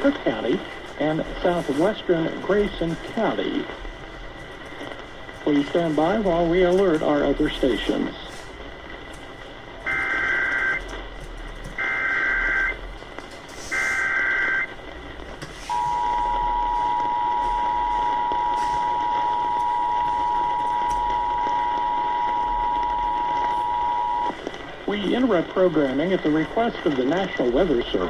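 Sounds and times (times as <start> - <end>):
steady two-tone attention signal: 15.7 - 24.4.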